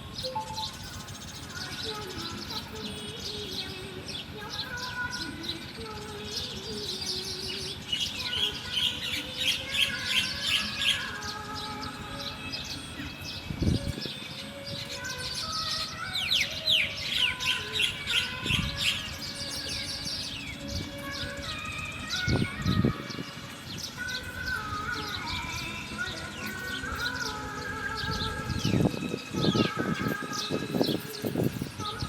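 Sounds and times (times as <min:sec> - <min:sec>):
whistled bird notes: 0:00.0 - 0:03.8
small birds chirping: 0:00.0 - 0:32.0.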